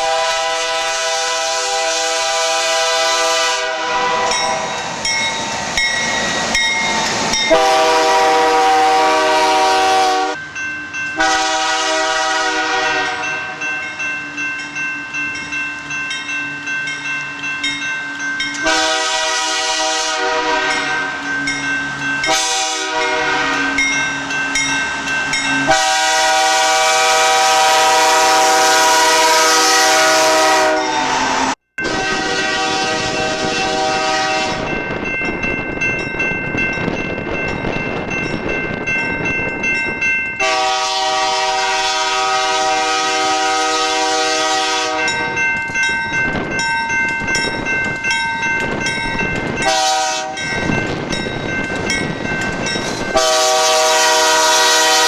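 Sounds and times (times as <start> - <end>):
locomotive air horn chord: 0.0 - 4.7, 7.5 - 10.4, 11.2 - 13.6, 18.6 - 21.2, 22.3 - 23.8, 25.6 - 34.7, 40.4 - 45.3, 49.6 - 50.5, 53.1 - 55.0.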